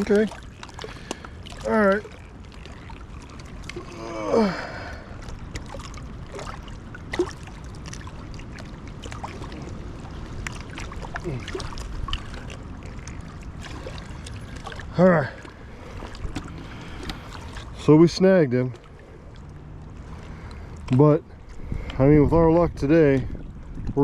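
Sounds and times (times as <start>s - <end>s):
river water rushing: 7.2s - 21.8s.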